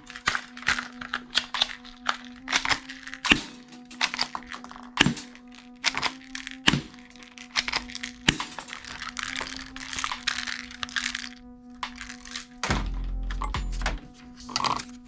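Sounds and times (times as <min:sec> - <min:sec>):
toy gun clicks and cracks: 0:07.6 - 0:11.0
low hum: 0:12.7 - 0:14.3.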